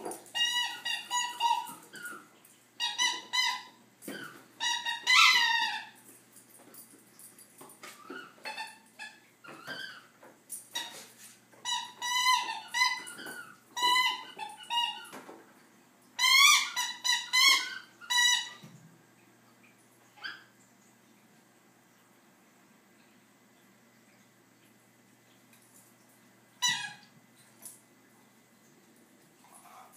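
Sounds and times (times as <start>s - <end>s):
squeaky toy squeaking: 0.2s - 6.0s, 10.8s - 15.1s, 16.2s - 18.6s, 26.6s - 27.0s.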